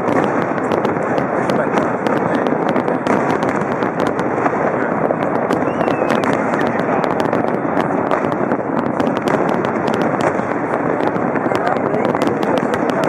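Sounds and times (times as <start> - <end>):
fireworks cracks and bangs: 0.0 - 13.0
rumbling crackle: 0.0 - 13.0.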